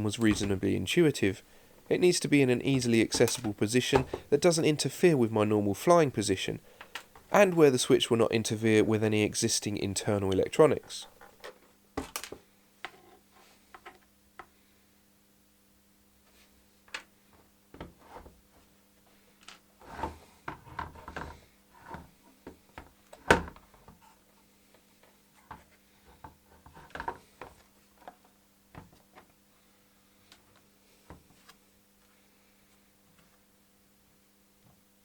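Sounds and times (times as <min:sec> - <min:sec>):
faint steady hum: 0:00.0 - 0:35.0.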